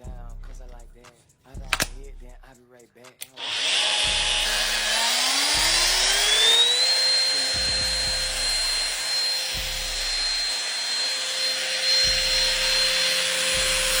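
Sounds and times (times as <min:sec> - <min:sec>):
angle grinder whining: 0:03.4 - 0:14.0
low booming notes: 0:04.1 - 0:04.9, 0:05.6 - 0:06.4, 0:07.6 - 0:09.0, 0:09.6 - 0:10.5, 0:12.0 - 0:13.0, 0:13.6 - 0:14.0.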